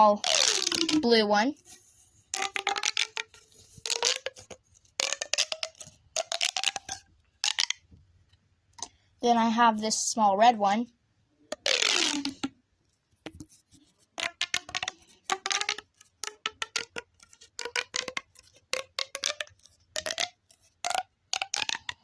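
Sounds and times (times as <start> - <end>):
pop tube falling sweep: 0.0 - 1.1, 2.4 - 7.8, 11.5 - 12.5, 14.2 - 22.0
pop tube clicking pops: 0.3 - 1.0, 2.4 - 7.8, 11.5 - 12.5, 14.2 - 22.0.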